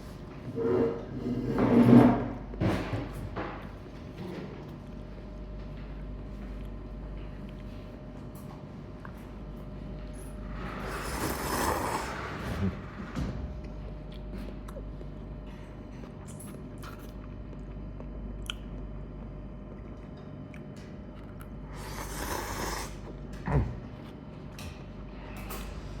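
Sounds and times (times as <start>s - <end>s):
steady low hum: 0.0s - 26.0s
soft chewing: 4.0s - 12.2s, 13.6s - 25.8s
noodle slurp: 10.7s - 12.6s, 21.7s - 23.1s.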